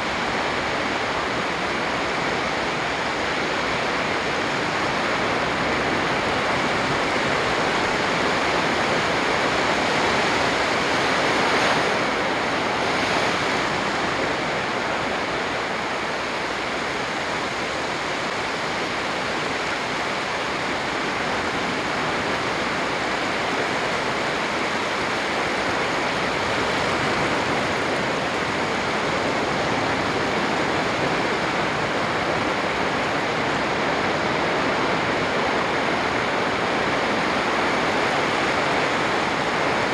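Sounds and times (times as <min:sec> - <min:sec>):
sea waves breaking: 0:04.0 - 0:15.1, 0:19.4 - 0:39.9.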